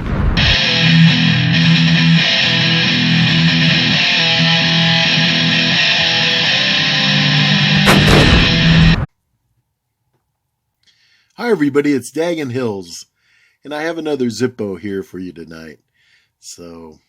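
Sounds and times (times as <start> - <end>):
strummed guitar intro music: 0.4 - 9.1
sharp hit: 7.7 - 9.1.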